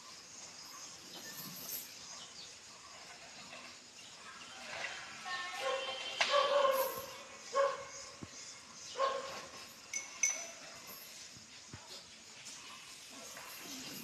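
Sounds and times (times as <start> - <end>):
light clinks: 9.5 - 11.9, 12.6 - 14.0.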